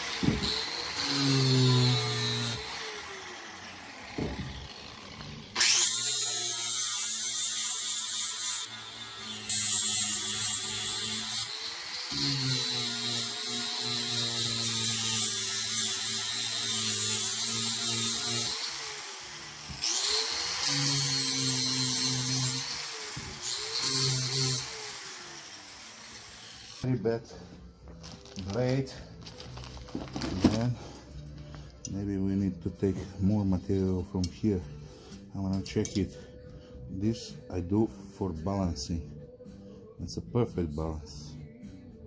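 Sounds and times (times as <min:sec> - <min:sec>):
grinder motor hum: 0:00.0 - 0:06.5.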